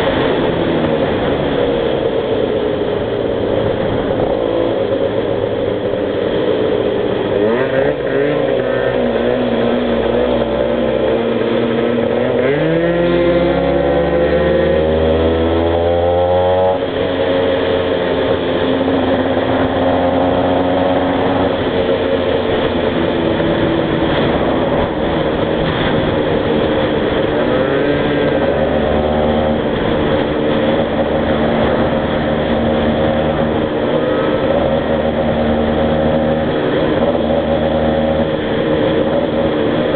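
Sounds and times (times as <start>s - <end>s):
two-stroke motorcycle engine revving: 0.0s - 39.9s.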